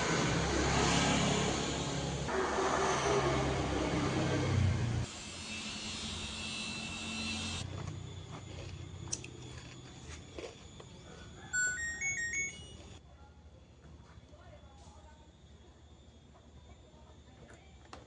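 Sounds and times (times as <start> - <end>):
washing machine beeping tune: 11.5 - 13.0.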